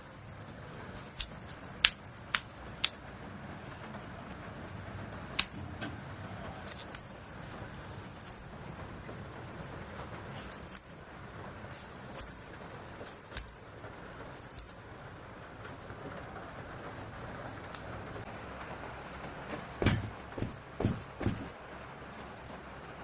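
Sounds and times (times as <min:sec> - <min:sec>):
metal jewellery jingling: 0:00.0 - 0:03.0, 0:05.4 - 0:05.7, 0:06.6 - 0:07.3, 0:08.0 - 0:08.6, 0:10.4 - 0:11.0, 0:11.8 - 0:13.8, 0:14.4 - 0:14.8, 0:17.5 - 0:17.9, 0:19.5 - 0:21.5, 0:22.2 - 0:22.6.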